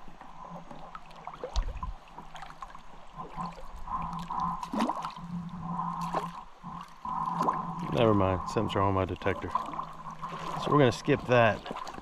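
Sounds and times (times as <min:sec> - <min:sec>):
creek water gurgling: 0:00.0 - 0:12.0
steady low hum: 0:02.8 - 0:12.0.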